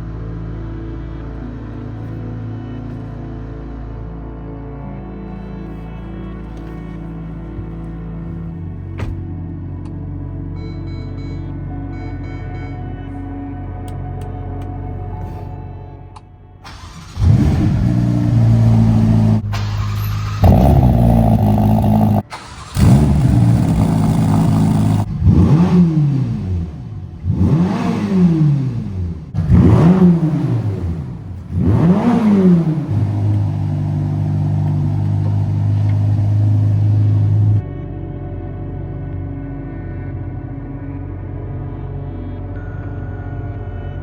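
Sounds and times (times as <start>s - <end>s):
car engine starting and revving: 16.6s - 37.6s.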